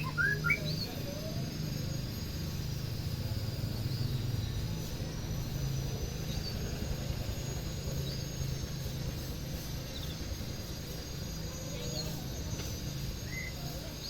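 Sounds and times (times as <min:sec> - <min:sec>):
faint bird chirps: 0:00.0 - 0:06.9, 0:09.8 - 0:14.0.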